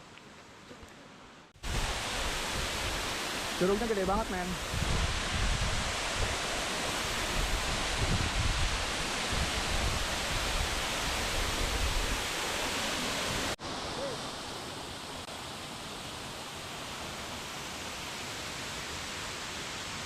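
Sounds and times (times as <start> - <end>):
wind rumbling on microphone: 1.6 - 13.6
waterfall rushing: 1.6 - 20.0.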